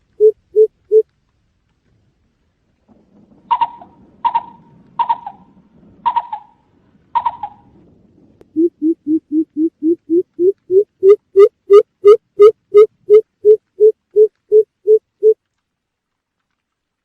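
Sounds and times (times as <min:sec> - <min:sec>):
bird deep boop notes: 0:07.2 - 0:07.7, 0:08.4 - 0:15.4.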